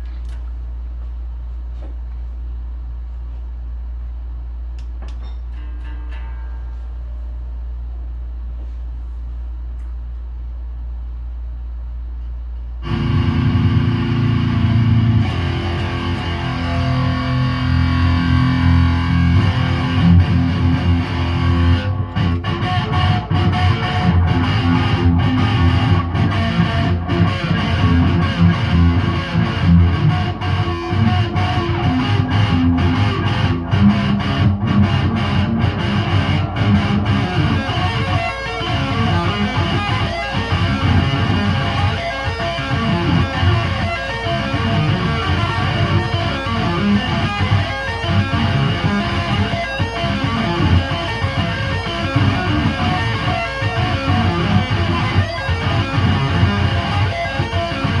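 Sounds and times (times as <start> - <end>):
distorted electric guitar music: 12.8 - 58.0.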